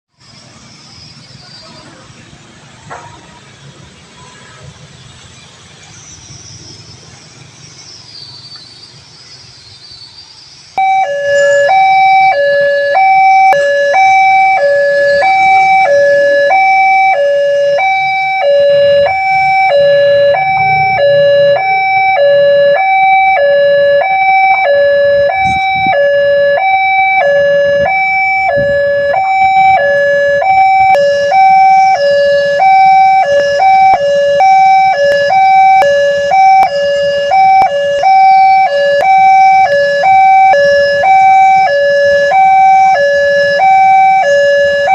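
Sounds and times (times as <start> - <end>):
level crossing two-tone alarm: 10.8 - 44.9.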